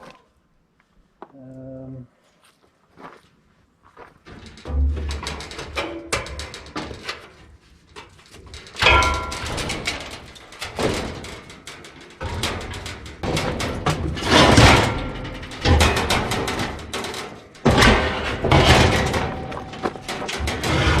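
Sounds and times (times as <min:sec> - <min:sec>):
knocks and thuds on metal frame: 0:04.3 - 0:21.0
noisy scraping bursts: 0:12.2 - 0:21.0.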